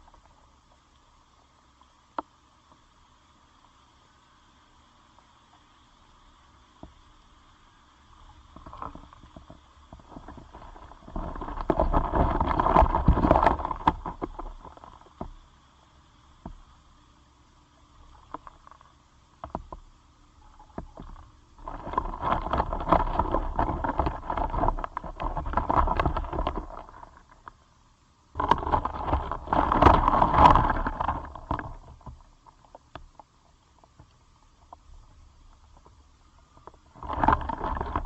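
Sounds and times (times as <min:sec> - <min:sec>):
beetles scratching and scraping: 0:08.1 - 0:15.5, 0:18.0 - 0:27.6, 0:28.4 - 0:38.0.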